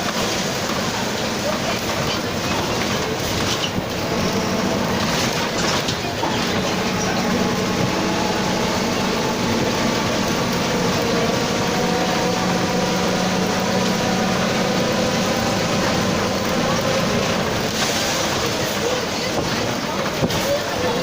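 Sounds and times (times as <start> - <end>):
bus engine drone: 0.0 - 21.0
road noise rushing: 0.0 - 21.0
driveshaft droning: 2.1 - 17.8.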